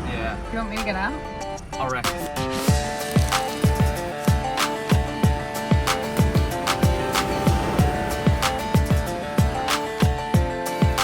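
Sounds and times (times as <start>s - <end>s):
background music with held notes: 0.0s - 11.0s
deep kick drum beat: 2.7s - 11.0s.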